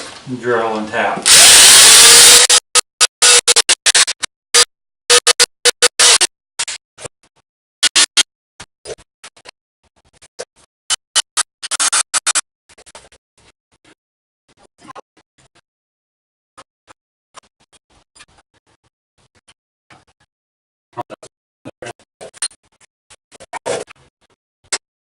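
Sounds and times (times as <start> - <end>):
power drill drilling metal: 1.2 - 2.6.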